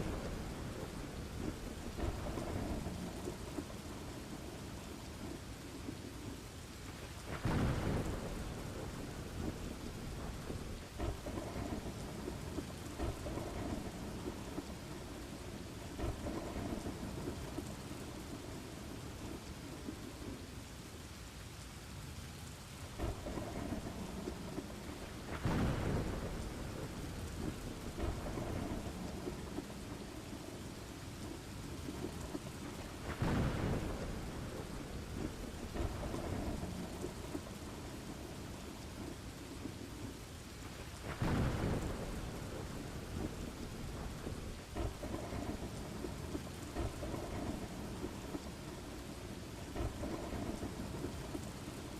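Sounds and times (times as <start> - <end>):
thunder rumbling: 0.0 - 20.4, 22.9 - 51.9
steady rain: 0.0 - 51.9.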